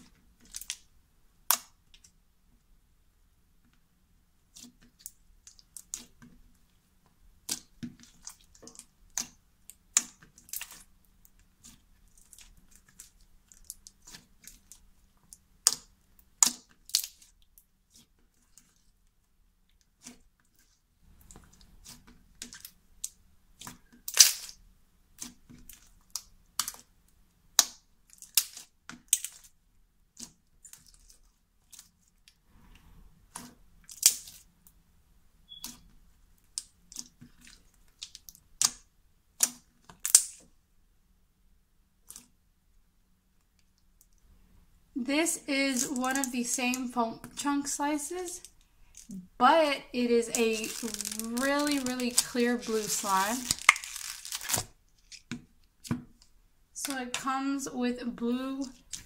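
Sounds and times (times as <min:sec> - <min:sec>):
slime popping and crackling: 0:11.6 - 0:18.0, 0:21.2 - 0:26.9, 0:27.5 - 0:31.9, 0:33.4 - 0:34.5, 0:36.5 - 0:40.5, 0:45.6 - 0:47.0, 0:50.2 - 0:55.3.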